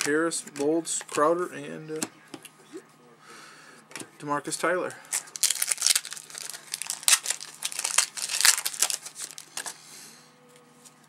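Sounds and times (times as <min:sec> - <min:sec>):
foil wrapper tearing and crinkling: 0:05.1 - 0:09.8.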